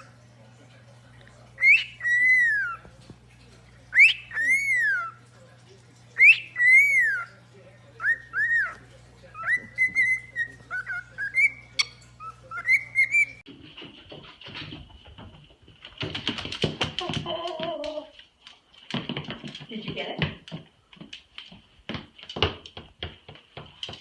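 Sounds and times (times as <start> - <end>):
parrot whistling: 1.6 - 2.8, 3.9 - 5.2, 6.2 - 7.4, 8.0 - 8.8, 9.4 - 13.4.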